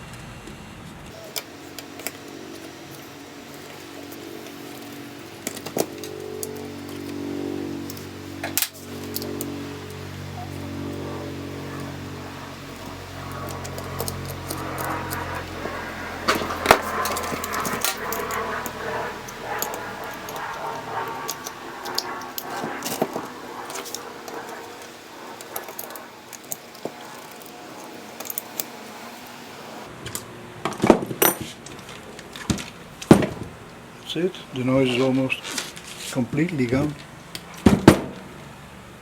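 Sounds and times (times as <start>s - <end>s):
transformer humming: 0.0s - 30.7s.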